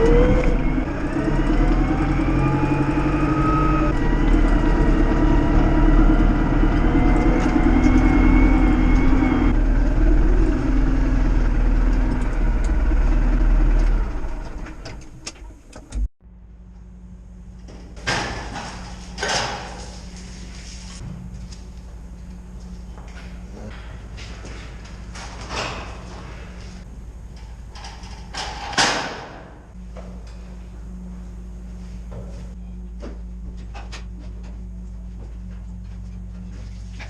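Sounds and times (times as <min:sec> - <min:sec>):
tractor engine revving: 0:00.0 - 0:16.1
low steady hum: 0:29.6 - 0:37.0.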